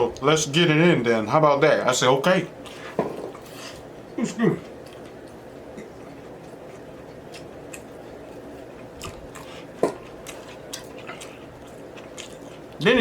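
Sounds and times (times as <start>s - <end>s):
chewing and biting food: 4.6s - 12.8s.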